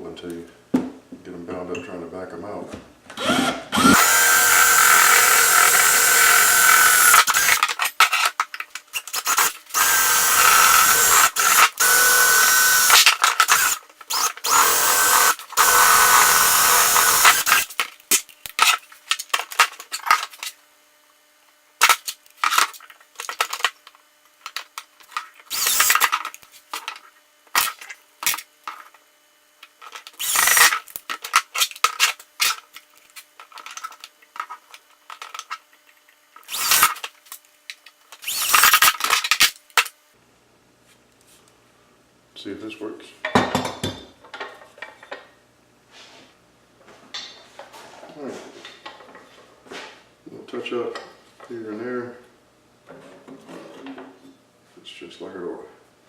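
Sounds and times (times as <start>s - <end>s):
power drill whining: 3.2s - 7.7s, 9.1s - 17.7s, 25.5s - 26.0s, 30.2s - 30.7s, 36.5s - 36.9s, 38.2s - 38.8s.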